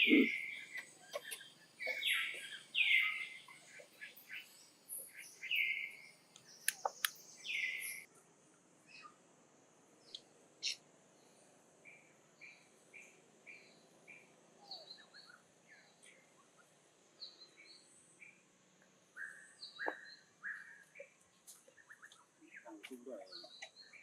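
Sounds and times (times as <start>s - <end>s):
faint bird chirping: 0.0s - 8.2s, 8.8s - 9.3s, 9.9s - 24.0s
sharp clicks: 6.3s - 7.2s.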